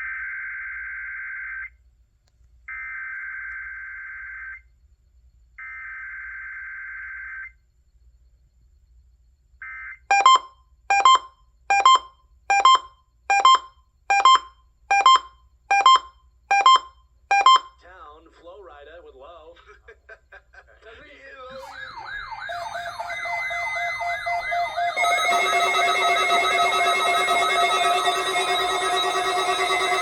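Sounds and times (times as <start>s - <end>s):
alert beeping: 10.1s - 17.8s, 21.6s - 30.0s
digital data screech: 21.5s - 30.0s.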